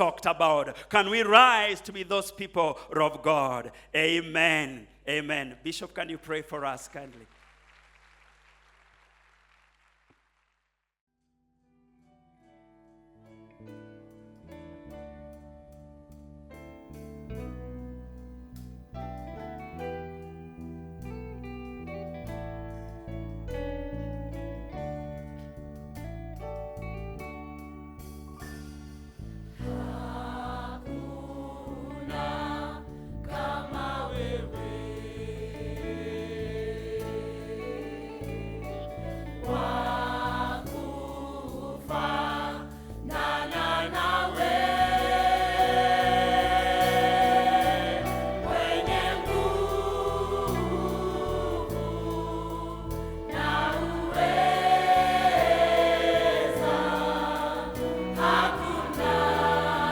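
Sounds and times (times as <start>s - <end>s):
instrumental backing: 13.3s - 59.9s
group singing gospel song: 29.5s - 59.9s.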